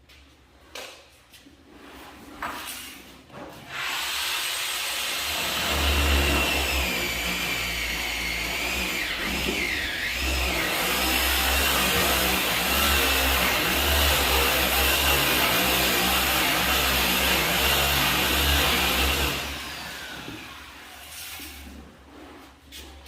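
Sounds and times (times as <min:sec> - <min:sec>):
power tool whining: 0:03.8 - 0:21.0.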